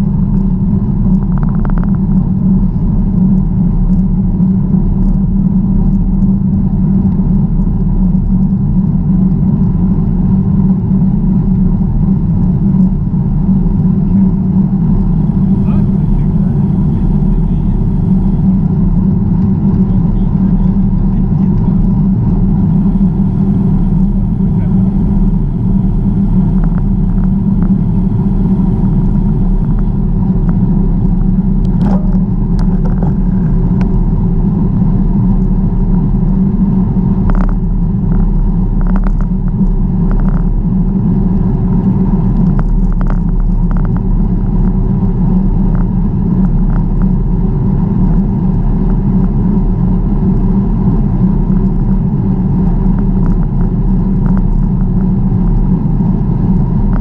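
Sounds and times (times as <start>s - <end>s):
wind buffeting microphone: 0.0s - 57.0s
bicycle tyre noise: 10.5s - 57.0s
small clicks and rattles: 37.3s - 38.2s, 38.8s - 40.5s, 42.4s - 44.0s.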